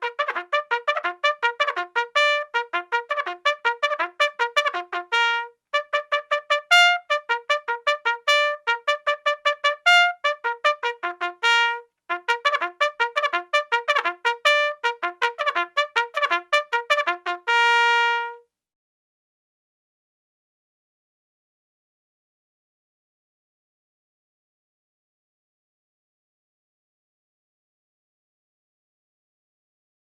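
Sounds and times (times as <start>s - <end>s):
bugle call: 0.0s - 18.4s.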